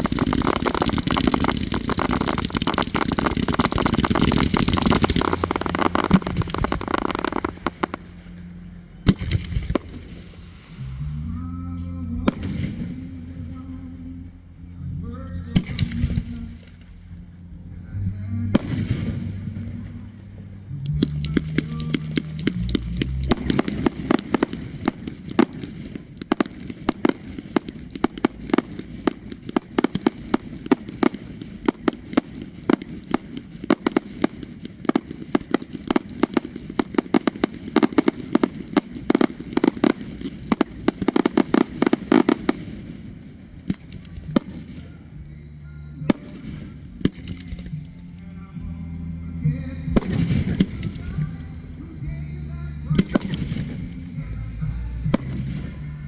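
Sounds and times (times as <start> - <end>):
fireworks bangs and crackles: 0.0 - 8.2, 9.1 - 10.8, 12.3 - 13.2, 18.6 - 19.5, 21.0 - 45.2, 46.1 - 47.9, 50.0 - 51.4, 53.0 - 54.3, 55.1 - 56.0.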